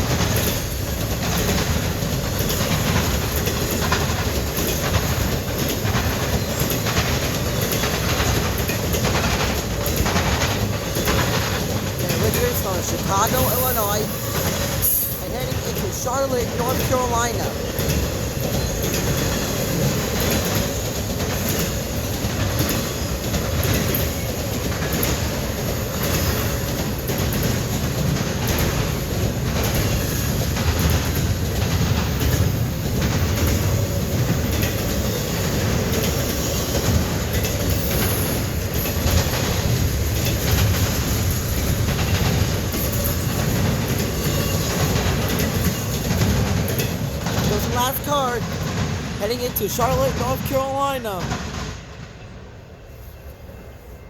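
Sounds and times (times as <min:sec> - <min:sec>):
wheels clicking over rail joints: 0:00.0 - 0:15.9
freight train rumbling past: 0:00.0 - 0:50.2.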